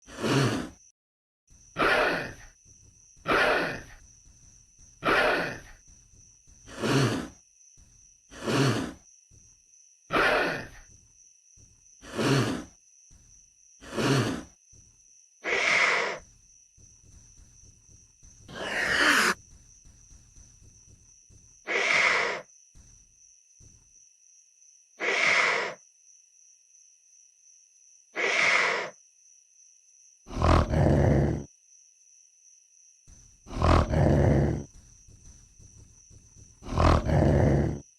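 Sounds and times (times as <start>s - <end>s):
creature hissing breaths: 8.3s - 9.0s, 12.0s - 12.7s, 18.5s - 19.4s.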